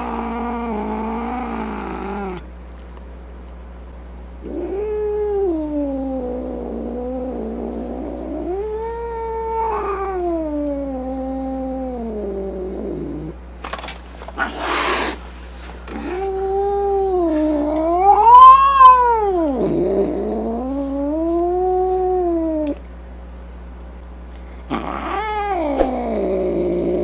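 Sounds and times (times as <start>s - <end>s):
cat yowling: 4.4s - 7.8s, 8.4s - 12.9s, 16.0s - 20.1s, 24.7s - 27.0s
cat hissing: 4.4s - 13.3s, 14.4s - 15.3s, 24.7s - 27.0s.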